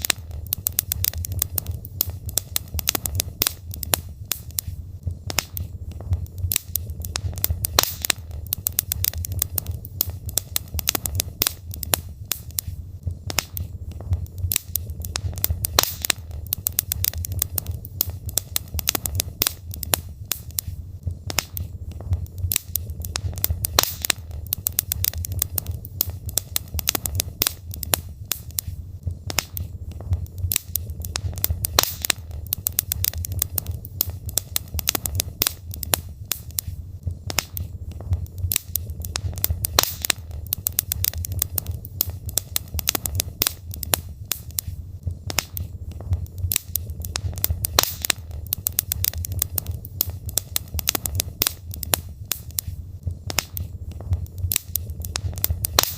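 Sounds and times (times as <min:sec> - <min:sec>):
fire crackling and popping: 0:00.0 - 0:55.9
low rumble of flames: 0:00.0 - 0:55.9.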